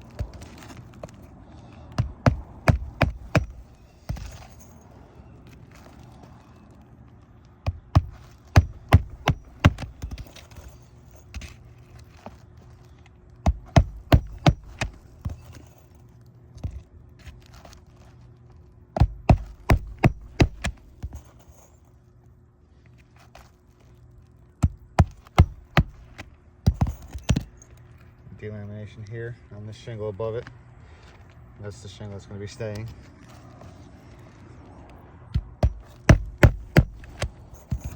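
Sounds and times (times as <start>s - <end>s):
hammer driving nails into shingles: 2.0s - 4.6s, 7.6s - 11.6s, 13.4s - 15.6s, 19.0s - 21.4s, 24.6s - 27.6s, 35.4s - 37.9s.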